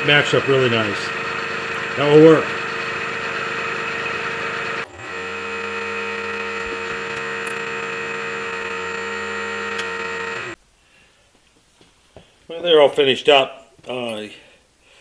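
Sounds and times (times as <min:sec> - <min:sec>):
drilling machine motor hum: 0:00.0 - 0:10.6.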